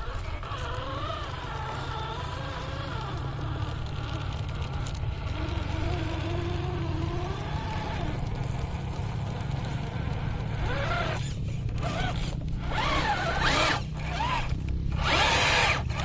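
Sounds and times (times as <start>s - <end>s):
electric motor and gearbox whining: 0.0s - 16.0s.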